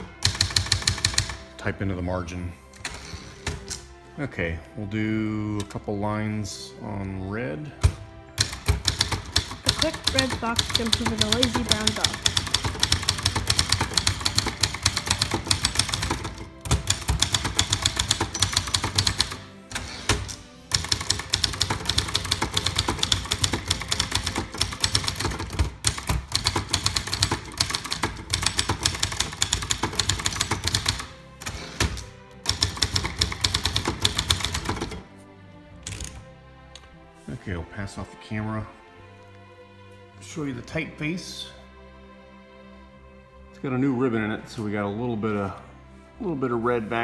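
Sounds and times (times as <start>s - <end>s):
manual typewriter typing: 0.0s - 1.5s, 8.4s - 35.0s.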